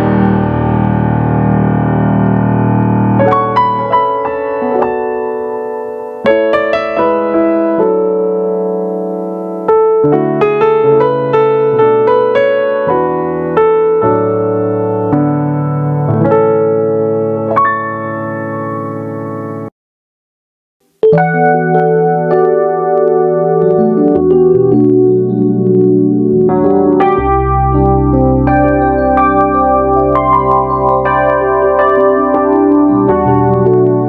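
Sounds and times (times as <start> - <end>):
digital piano playing slowly: 0.0 - 19.7, 20.8 - 34.0.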